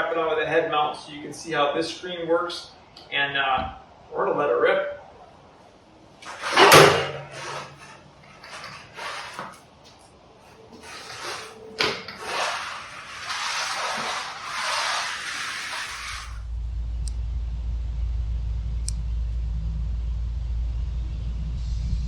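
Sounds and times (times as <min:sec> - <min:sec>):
rubbing against microphone: 0:06.2 - 0:09.6, 0:10.5 - 0:16.4
rustling and scraping on camera: 0:06.2 - 0:16.4.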